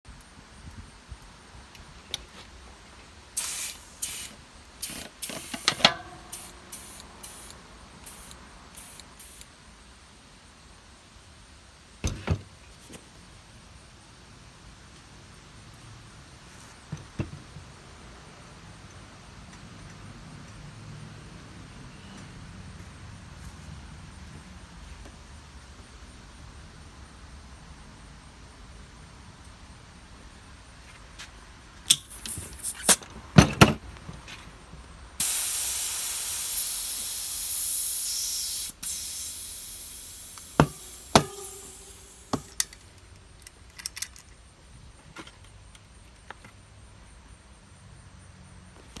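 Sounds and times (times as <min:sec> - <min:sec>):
air hissing into tyre: 0:03.4 - 0:09.5, 0:31.9 - 0:33.8, 0:35.2 - 0:42.8.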